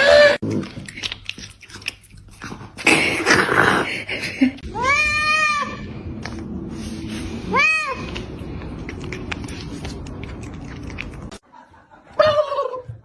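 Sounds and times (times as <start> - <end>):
cat meowing: 4.7 - 5.9, 7.5 - 8.3.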